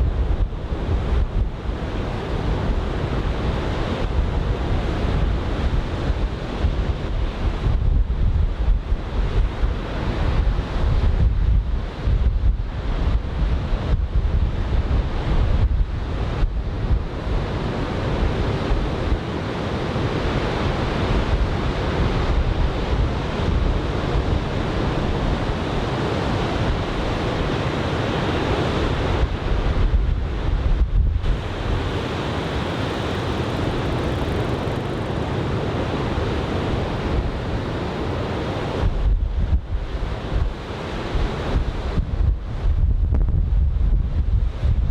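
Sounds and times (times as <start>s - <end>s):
wind buffeting microphone: 0.0s - 44.9s
waves breaking on beach: 31.2s - 38.9s.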